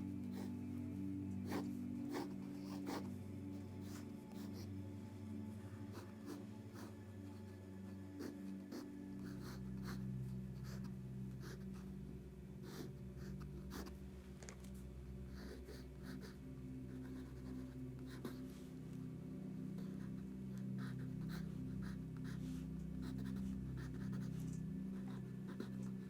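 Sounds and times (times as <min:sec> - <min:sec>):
steady low hum: 0:00.0 - 0:26.0
pencil scratching on paper: 0:00.2 - 0:00.6, 0:01.4 - 0:04.7, 0:05.9 - 0:11.9, 0:12.6 - 0:13.9, 0:17.0 - 0:18.6, 0:20.8 - 0:26.0.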